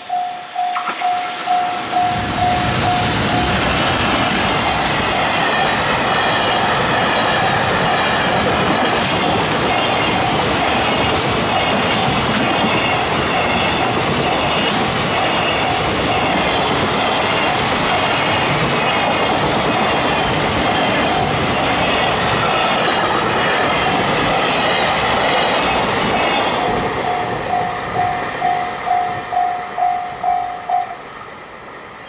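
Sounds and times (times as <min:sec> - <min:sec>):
level crossing bell ringing: 0:00.0 - 0:03.6, 0:27.1 - 0:31.0
train wheels on rails: 0:00.0 - 0:32.0.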